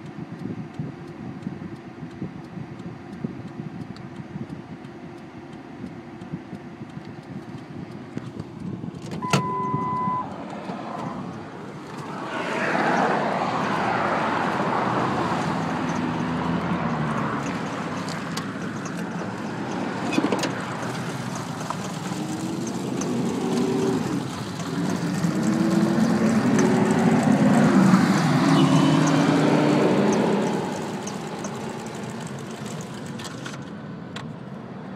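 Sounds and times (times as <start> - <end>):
truck engine running rough: 13.1 - 33.8.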